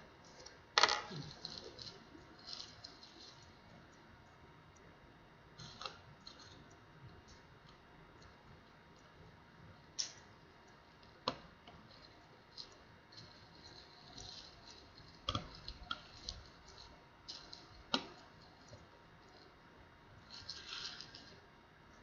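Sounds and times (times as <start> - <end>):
small hard parts clicking: 0.4 - 4.0.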